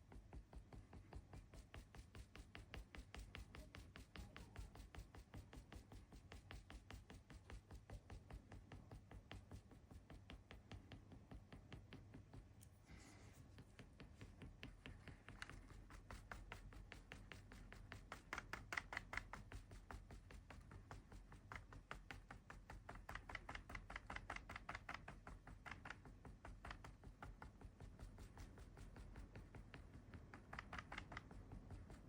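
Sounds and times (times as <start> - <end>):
ink dabber tapping on paper: 0.0 - 32.0.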